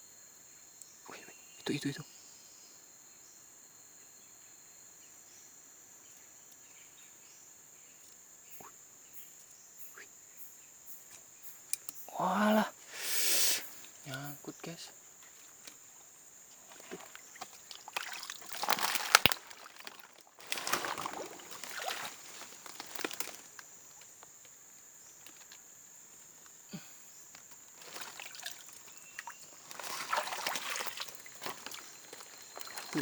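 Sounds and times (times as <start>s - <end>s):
water splashing in a stream: 16.6s - 23.5s, 27.8s - 33.0s.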